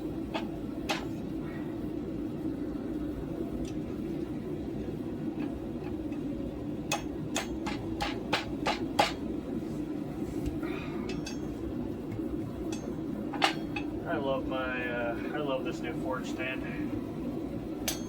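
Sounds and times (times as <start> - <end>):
steady low rumble: 0.0 - 18.0
hammer ringing on anvil: 11.1 - 11.5.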